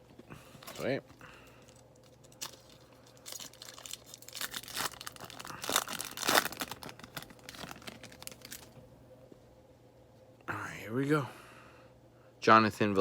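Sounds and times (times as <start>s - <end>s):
wrapper tearing and crinkling: 1.6s - 8.8s.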